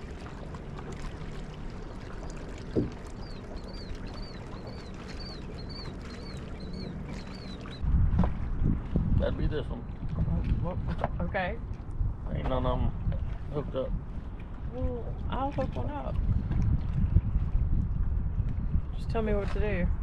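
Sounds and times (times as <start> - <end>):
boat hum on water: 0.0 - 20.0
wind rumble on microphone: 0.0 - 20.0
bird chirping: 3.2 - 7.8.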